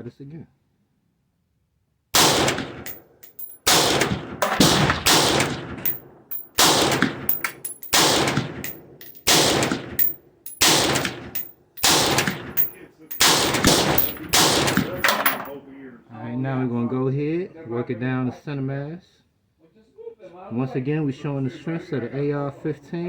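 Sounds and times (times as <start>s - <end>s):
rifle gunshots with ringing echo: 2.2s - 3.0s, 3.6s - 15.5s.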